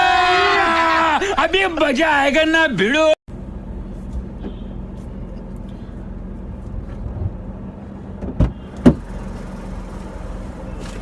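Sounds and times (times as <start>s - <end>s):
car engine idling: 3.3s - 11.0s.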